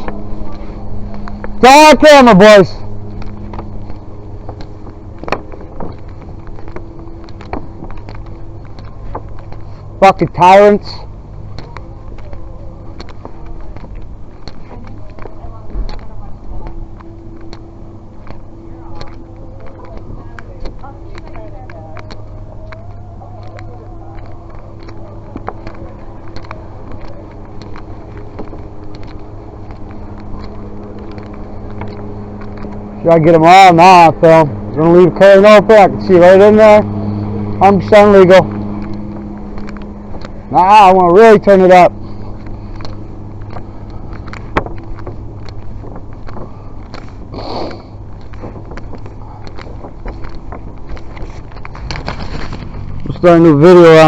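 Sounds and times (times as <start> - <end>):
idling vehicle engines hum: 0.0 - 54.0
light clicks and knocks: 41.9 - 47.3.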